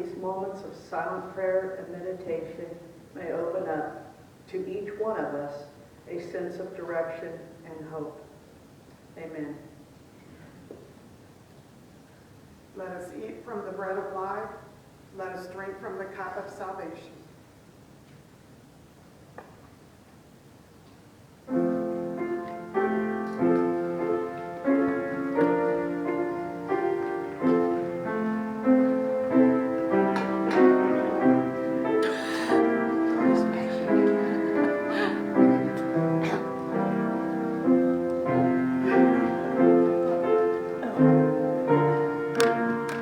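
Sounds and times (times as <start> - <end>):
piano music: 21.5 - 43.0.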